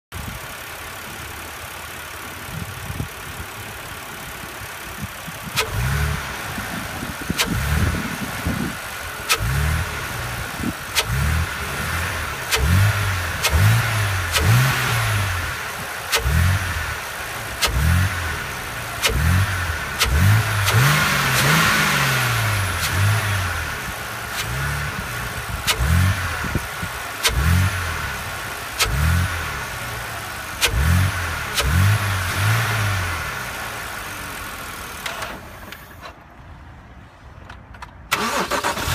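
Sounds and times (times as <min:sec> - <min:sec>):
car engine idling and revving: 0:00.1 - 0:38.9
sharp click: 0:05.5 - 0:05.8, 0:07.4 - 0:07.6.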